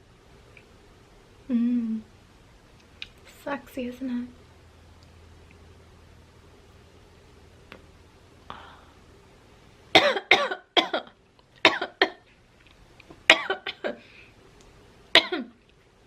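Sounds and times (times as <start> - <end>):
woman coughing harshly: 10.0 - 12.2, 13.3 - 14.0, 15.2 - 15.6.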